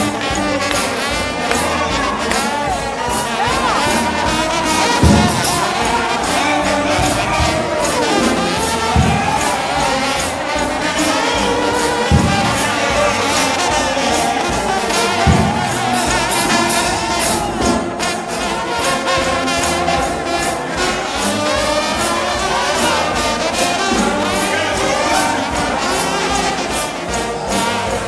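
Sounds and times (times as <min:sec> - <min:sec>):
brass band playing: 0:00.0 - 0:28.0
heavy drum hits: 0:01.9 - 0:18.3.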